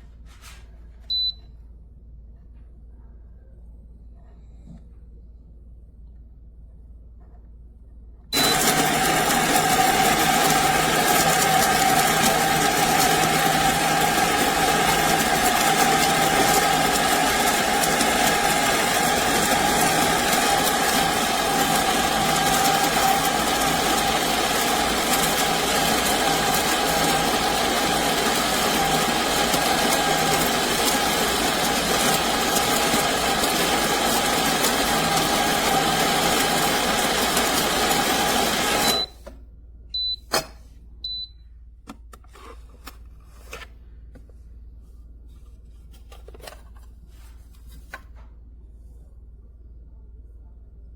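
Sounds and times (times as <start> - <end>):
coffee grinder motor whine: 8.4 - 39.1.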